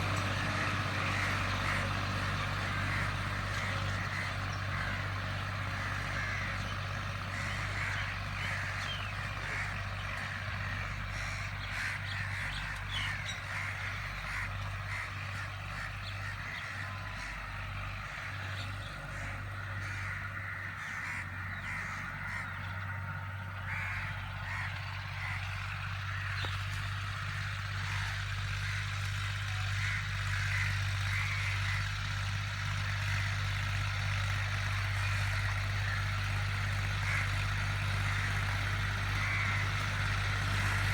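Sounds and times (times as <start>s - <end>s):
birds calling: 0.0s - 40.9s
tractor engine running: 0.0s - 40.9s.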